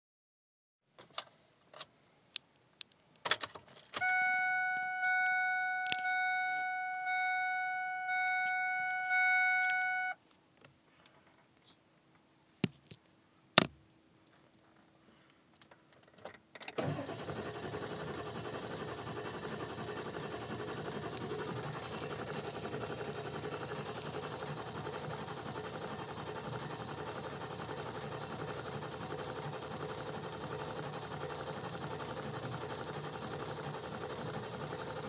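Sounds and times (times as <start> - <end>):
dashboard warning chime: 4.0 - 10.2.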